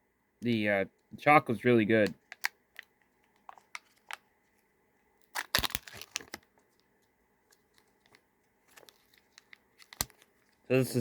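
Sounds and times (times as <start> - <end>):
wrapper tearing and crinkling: 5.2 - 6.5, 7.7 - 10.3.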